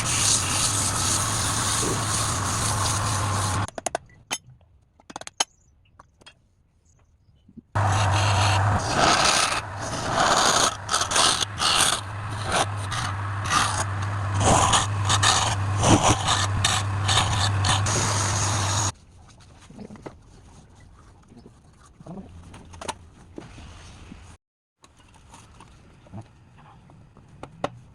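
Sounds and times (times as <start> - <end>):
turning tool scraping wood: 0.0 - 3.7, 7.8 - 18.9
wood lathe motor hum: 0.0 - 3.7, 7.8 - 18.9.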